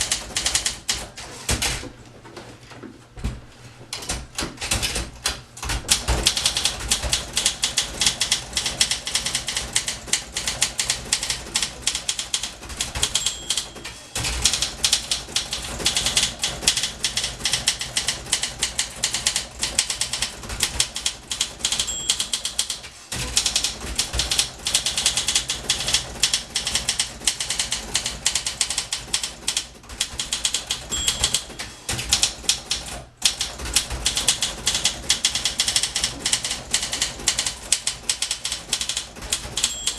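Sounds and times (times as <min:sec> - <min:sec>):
typewriter keys clattering: 0:00.0 - 0:01.8, 0:03.9 - 0:39.9
typewriter margin bell ringing: 0:13.0 - 0:14.0, 0:21.6 - 0:22.7, 0:30.9 - 0:31.6, 0:38.8 - 0:39.9.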